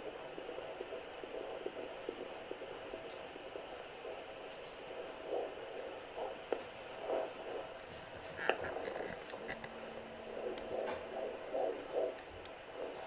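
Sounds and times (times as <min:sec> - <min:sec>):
doppler soft rhythmic pulses: 0:00.0 - 0:13.0
steady hiss: 0:00.0 - 0:13.0
probe clicks: 0:08.4 - 0:09.8, 0:10.4 - 0:11.2.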